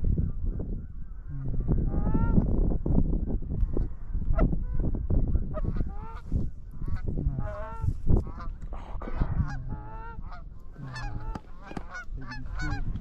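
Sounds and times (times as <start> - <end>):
geese honking and clucking: 3.8 - 13.0.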